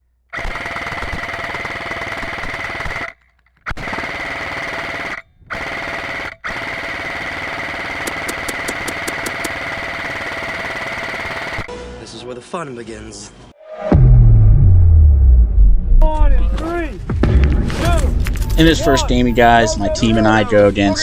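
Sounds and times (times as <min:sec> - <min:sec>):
airsoft rifle firing full auto: 0:00.3 - 0:11.7
sharp clicks: 0:00.3 - 0:11.7.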